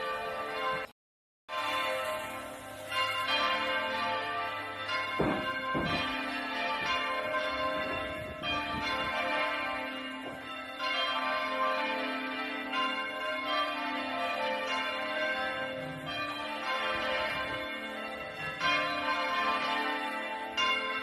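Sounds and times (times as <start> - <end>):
church bells ringing: 0.0 - 0.9, 1.5 - 21.0.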